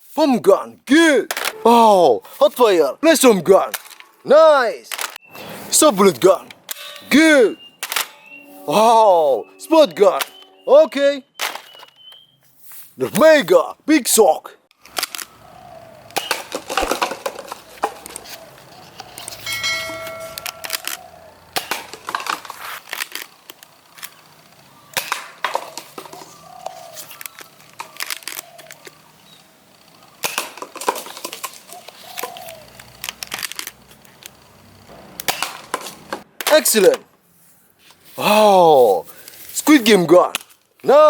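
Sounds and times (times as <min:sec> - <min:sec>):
short pitched tone: 0:06.9 - 0:11.4
plastic toy blasters clicking: 0:20.4 - 0:26.3, 0:27.0 - 0:36.9.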